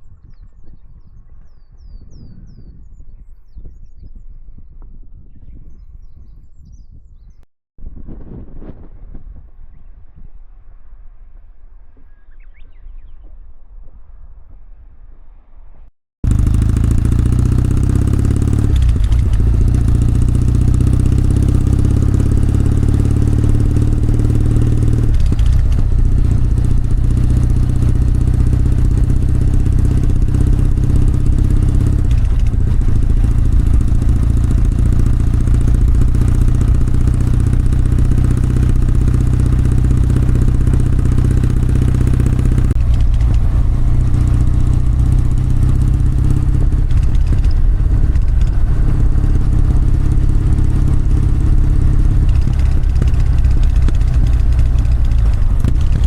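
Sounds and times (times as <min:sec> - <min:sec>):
motorcycle engine running: 0:16.2 - 0:56.0.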